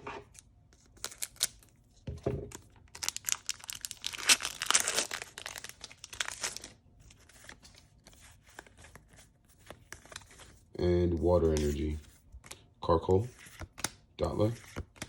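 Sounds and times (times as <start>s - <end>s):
foil wrapper tearing and crinkling: 1.0s - 1.7s, 2.9s - 6.8s.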